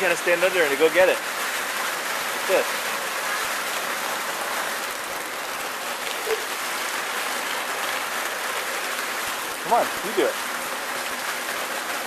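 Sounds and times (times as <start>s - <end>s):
rain and hail falling: 0.0s - 12.0s.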